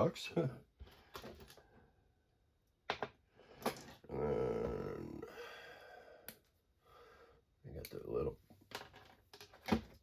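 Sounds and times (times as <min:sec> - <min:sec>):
person groaning: 0:04.0 - 0:06.0.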